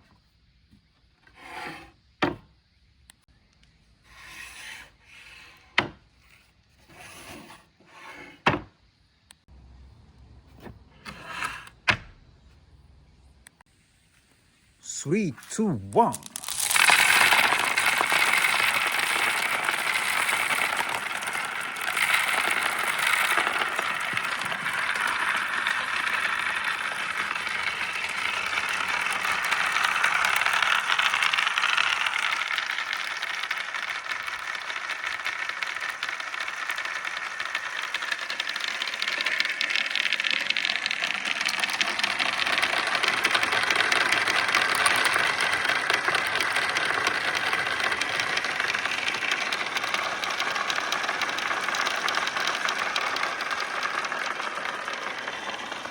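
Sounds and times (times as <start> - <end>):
glass marbles rattling down a run: 15.5 - 55.9.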